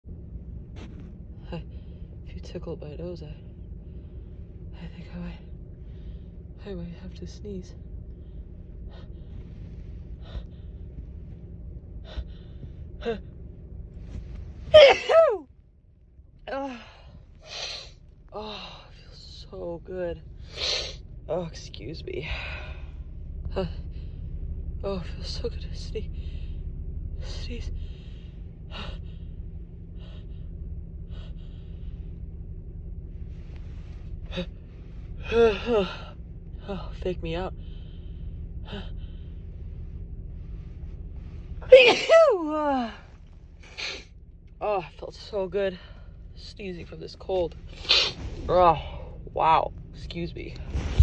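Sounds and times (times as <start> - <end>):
woman sneezing: 14.7 - 15.4, 41.6 - 42.5.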